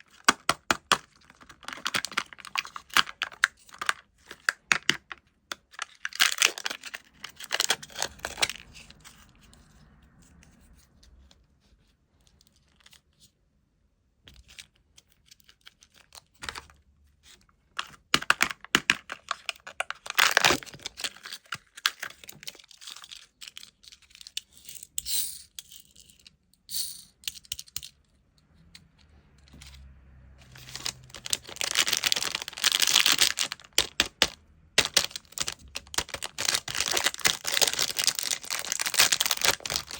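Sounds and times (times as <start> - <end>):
plastic wrappers crinkling: 0.0 - 9.0, 17.8 - 24.4, 30.4 - 39.9.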